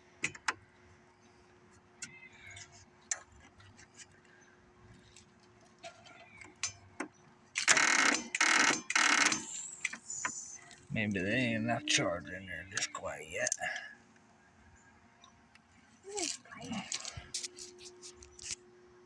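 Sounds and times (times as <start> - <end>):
faint steady hum: 0.0 - 19.0
small clicks and handling noises: 1.7 - 10.9, 15.2 - 18.7
electric starter bursts: 7.6 - 10.0.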